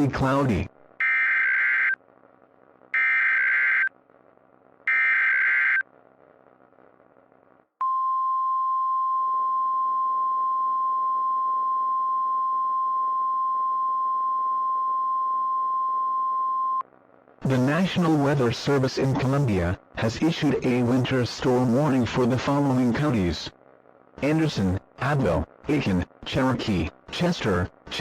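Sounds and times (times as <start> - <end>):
steady alarm tone: 3.0 - 3.9, 4.9 - 5.8.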